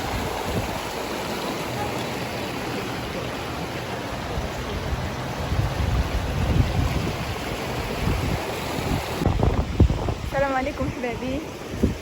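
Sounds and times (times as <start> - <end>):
wind buffeting microphone: 0.0 - 1.1, 4.2 - 12.0.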